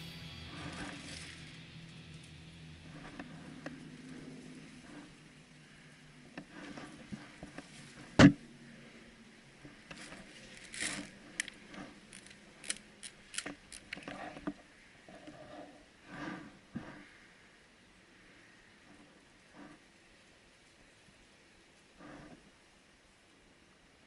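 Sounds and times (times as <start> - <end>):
faint rustling: 0.0 - 22.8
small clicks: 9.9 - 14.6.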